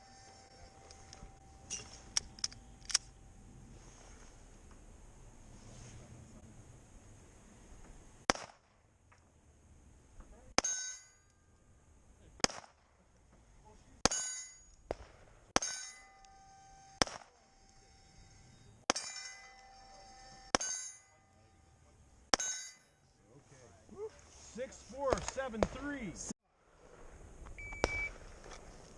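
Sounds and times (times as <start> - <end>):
pistol shots: 8.3 - 8.8, 12.4 - 12.9, 14.9 - 15.8, 17.0 - 17.3
steel plate clanging: 10.6 - 11.5, 14.0 - 14.8, 15.6 - 21.6, 22.3 - 23.0.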